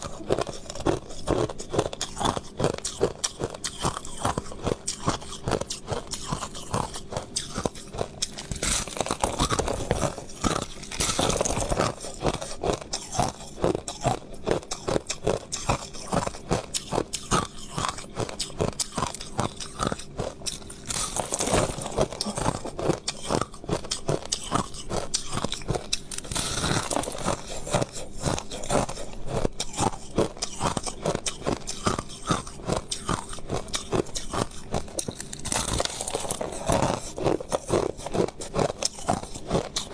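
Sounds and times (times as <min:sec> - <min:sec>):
chewing crushed ice: 0:00.0 - 0:39.9.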